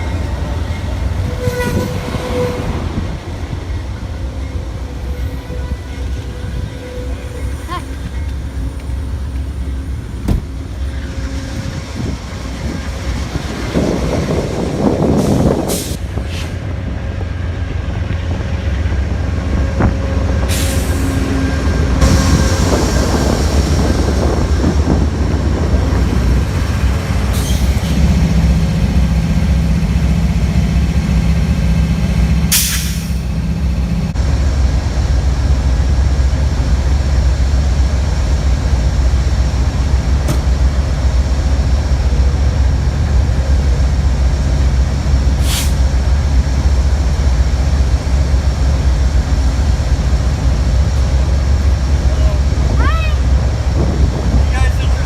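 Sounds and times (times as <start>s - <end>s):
train rumbling: 0.0s - 55.0s
short hisses: 45.4s - 45.8s.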